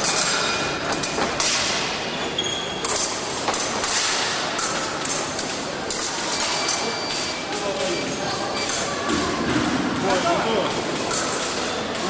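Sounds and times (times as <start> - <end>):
fencing hall din: 0.0 - 12.0
fencing blades clicking: 2.8 - 8.9, 9.6 - 12.0.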